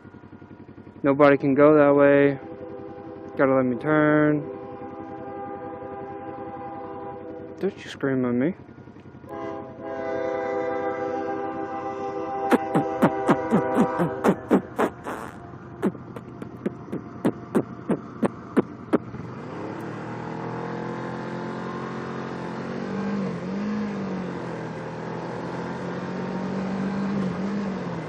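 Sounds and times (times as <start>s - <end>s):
engine humming: 0.0s - 10.0s, 11.0s - 20.6s.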